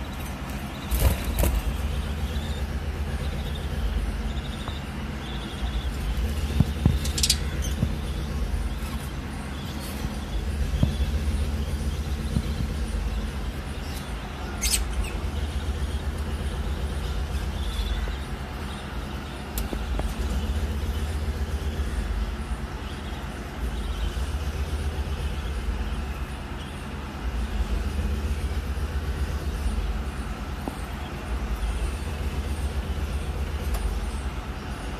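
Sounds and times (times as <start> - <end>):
high bird chirps: 0.0 - 20.0
steady low rumble: 0.0 - 34.9.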